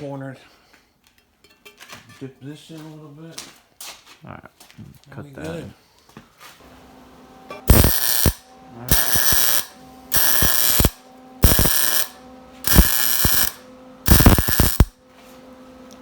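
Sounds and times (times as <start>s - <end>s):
power tool on steel: 7.6s - 15.0s.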